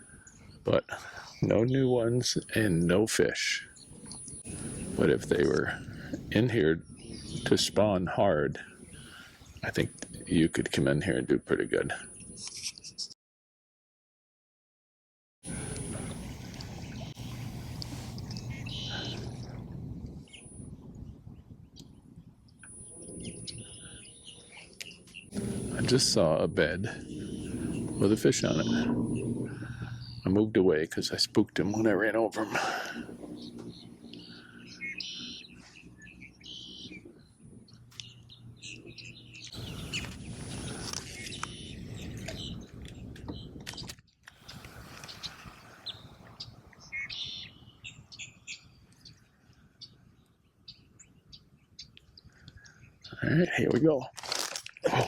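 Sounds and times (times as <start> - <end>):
birds chirping: 0.0 - 13.1, 15.5 - 54.0
wind: 0.0 - 13.2, 15.4 - 55.0
low rumble of water: 15.5 - 24.4, 25.3 - 36.3, 44.4 - 52.7.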